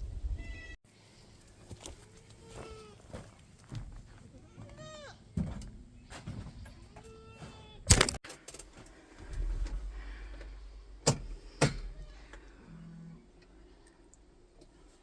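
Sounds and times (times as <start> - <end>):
low handling rumble: 8.9 - 14.6.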